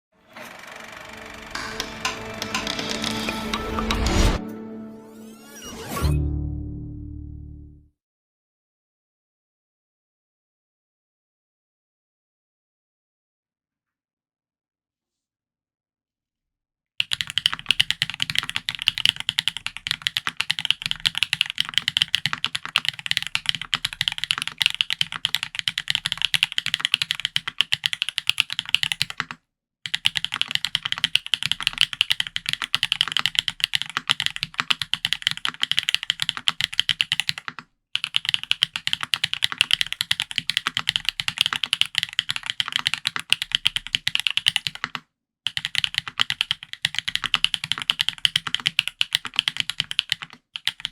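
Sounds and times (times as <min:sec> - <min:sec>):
fast mechanical keyboard typing: 0:00.5 - 0:04.0, 0:17.0 - 0:50.9.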